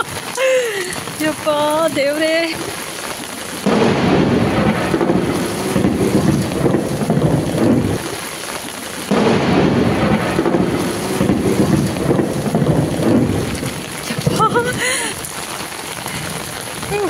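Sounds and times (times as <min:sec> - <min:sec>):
heavy downpour: 0:00.0 - 0:17.0
thunder rumbling: 0:00.0 - 0:17.0.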